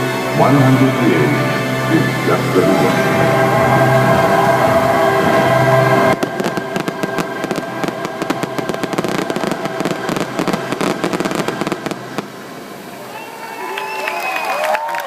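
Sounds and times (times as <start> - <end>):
fireworks crackling and popping: 6.1 - 13.3.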